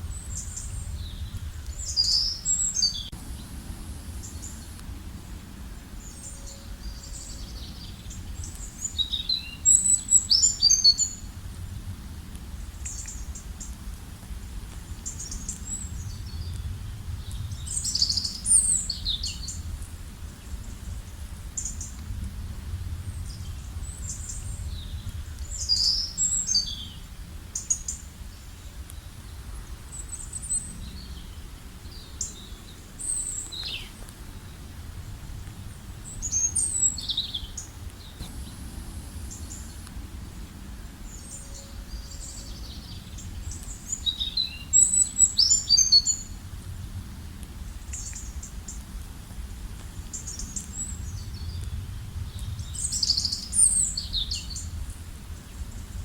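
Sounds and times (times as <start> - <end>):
low rumble: 0.0 - 8.8, 34.4 - 43.8
songbirds chirping: 0.0 - 56.0.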